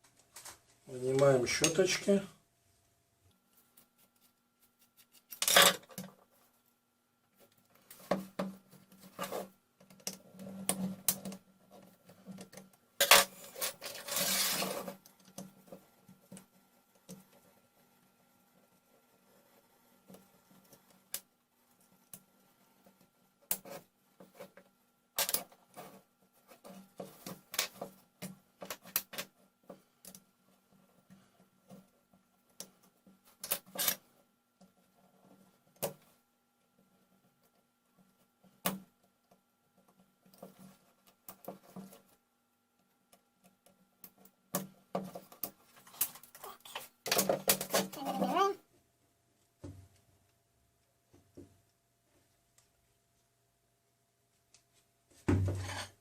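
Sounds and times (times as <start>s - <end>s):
small parts clicking and scraping: 3.5s - 6.5s, 7.4s - 31.9s, 32.5s - 36.2s, 43.1s - 48.3s.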